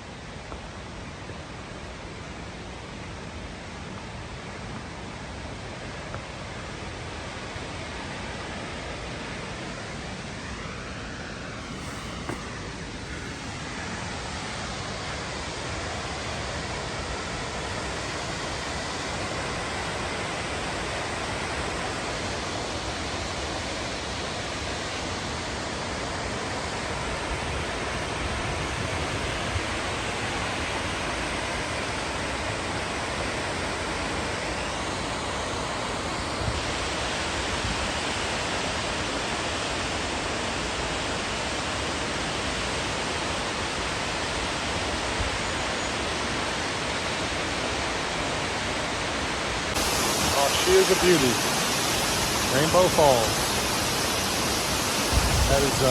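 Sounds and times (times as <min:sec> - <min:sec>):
waterfall rushing: 0:47.1 - 0:55.9.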